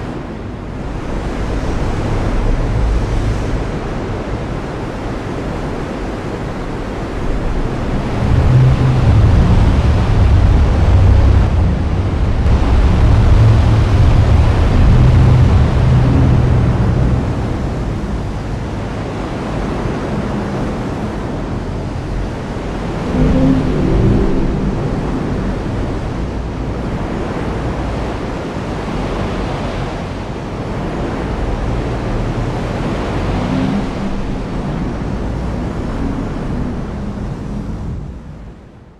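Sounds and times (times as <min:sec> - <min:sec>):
low thunder rumbles: 0:06.6 - 0:27.9
heavy rain falling: 0:07.0 - 0:19.0.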